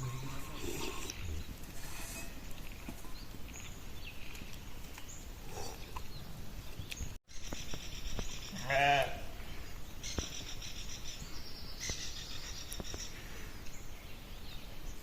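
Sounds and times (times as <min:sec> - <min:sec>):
outdoor background noise: 0:00.0 - 0:15.0
sheep bleating: 0:08.6 - 0:09.3.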